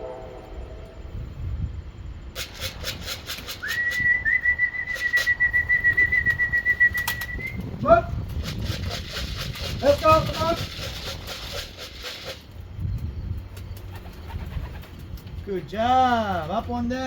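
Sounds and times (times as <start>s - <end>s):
pigeon wings flapping: 2.4s - 12.5s, 13.4s - 15.4s
person whistling: 3.6s - 7.6s.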